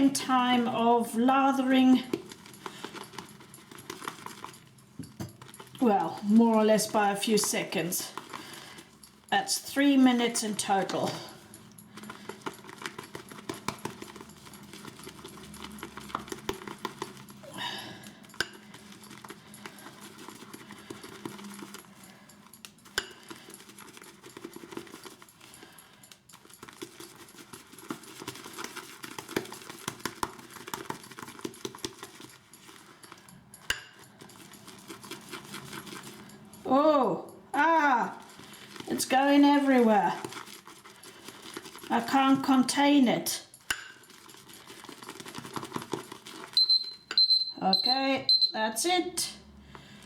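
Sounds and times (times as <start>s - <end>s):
brush knocking against bowl: 1.4s - 25.5s, 26.3s - 36.6s.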